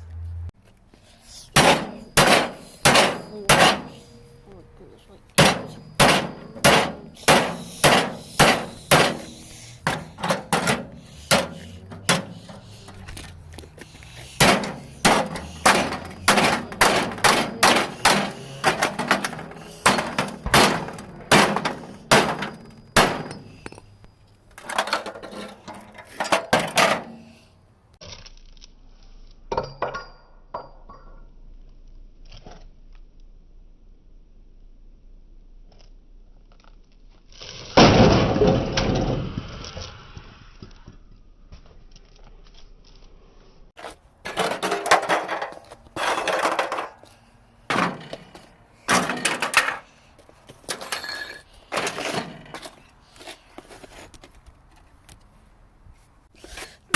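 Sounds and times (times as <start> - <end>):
heavy blows smashing microwave: 1.5 - 4.0, 5.4 - 12.6, 14.3 - 23.6, 47.7 - 49.9.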